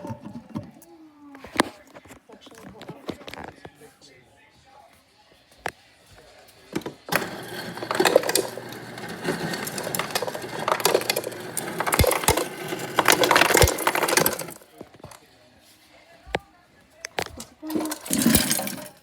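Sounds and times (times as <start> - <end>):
ice cubes clattering in a drain: 6.8 - 14.7, 17.2 - 19.0.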